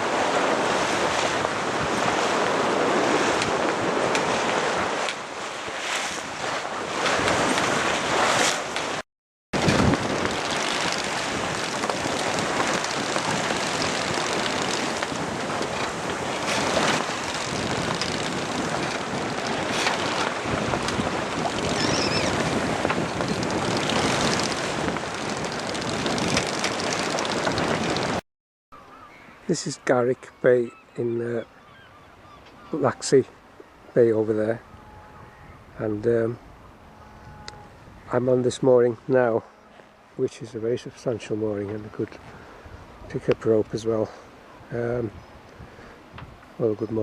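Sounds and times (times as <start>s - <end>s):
sea rushing past hull: 0.0s - 9.0s, 9.6s - 28.2s
wind blasting across microphone: 0.0s - 9.0s, 9.6s - 28.2s, 33.6s - 39.1s, 41.3s - 47.0s.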